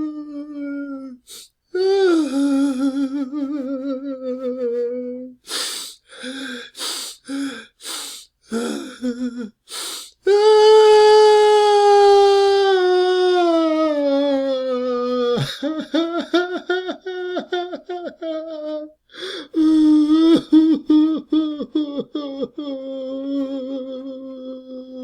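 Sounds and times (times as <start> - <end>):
man crying: 0.0 - 5.4, 8.5 - 9.6, 10.3 - 19.0, 19.6 - 25.0
sharp breath drawn: 5.5 - 8.4, 9.7 - 10.2.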